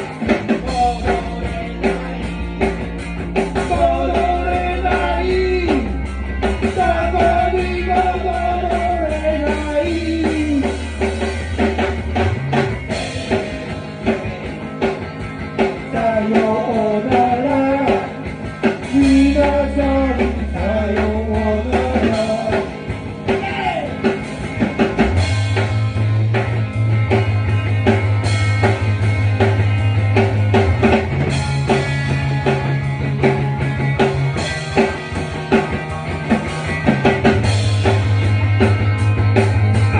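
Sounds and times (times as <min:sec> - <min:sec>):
person singing: 0:00.0 - 0:02.8, 0:03.6 - 0:06.0, 0:06.6 - 0:11.0, 0:15.6 - 0:18.2, 0:18.8 - 0:24.1
bass guitar low notes: 0:00.0 - 0:39.9
drum kit: 0:00.0 - 0:39.9
guitar: 0:00.0 - 0:39.9.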